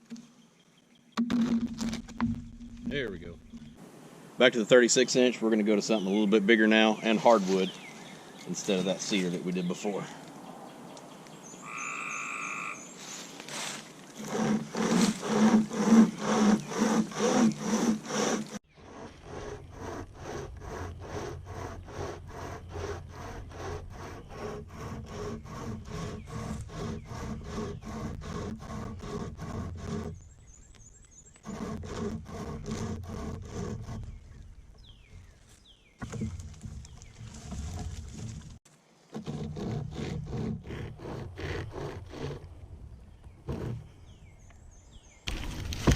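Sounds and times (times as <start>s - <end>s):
hand chainsaw sawing branch: 7.0s - 9.6s, 13.0s - 30.3s, 31.4s - 34.4s, 36.0s - 42.5s.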